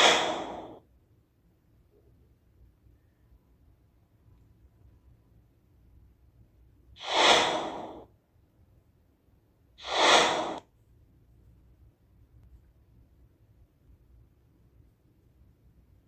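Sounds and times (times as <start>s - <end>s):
whoosh: 0.0s - 0.8s, 7.0s - 8.0s, 9.8s - 10.6s.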